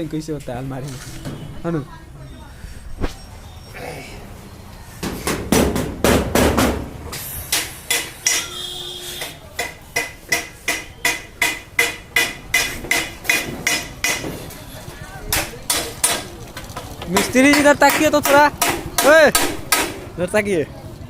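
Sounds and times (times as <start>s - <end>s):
hammer striking sheet metal: 7.5s - 8.6s, 9.2s - 14.4s, 17.2s - 20.0s.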